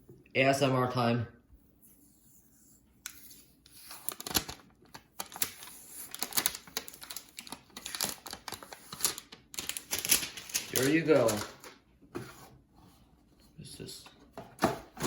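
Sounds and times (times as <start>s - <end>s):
plastic wrapping crinkling: 3.9s - 11.8s.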